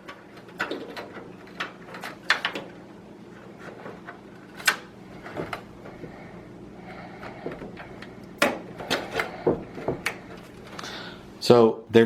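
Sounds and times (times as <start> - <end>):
clicks and knocks of cable connectors: 0.0 - 2.8, 7.2 - 10.8.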